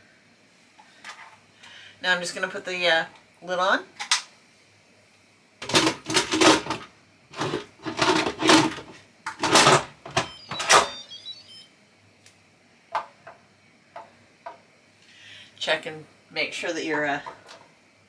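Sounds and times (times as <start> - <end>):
high electronic beeps: 10.2 - 11.7.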